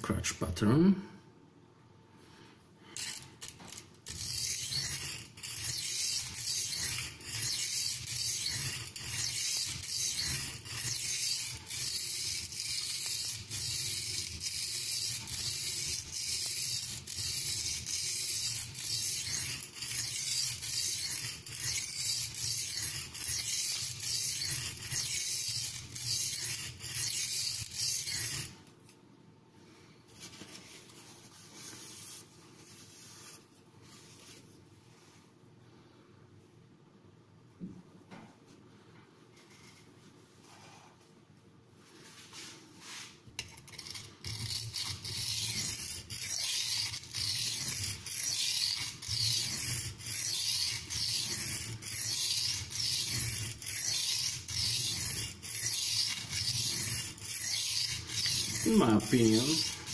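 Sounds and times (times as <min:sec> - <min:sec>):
knife scraping on oilstone: 0:03.0 - 0:28.6, 0:42.1 - 0:59.9.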